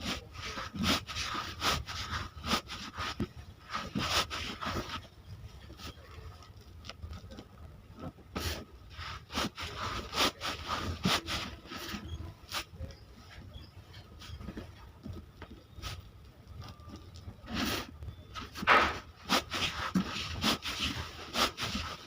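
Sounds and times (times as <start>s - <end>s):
taps and scrapes on wood: 18.4s - 22.0s.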